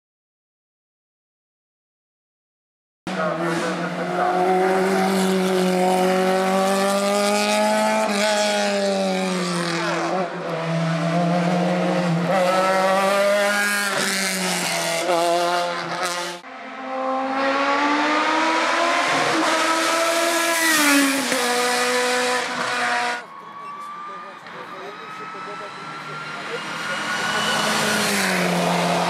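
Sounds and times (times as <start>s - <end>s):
race car engines revving high: 3.1s - 29.0s.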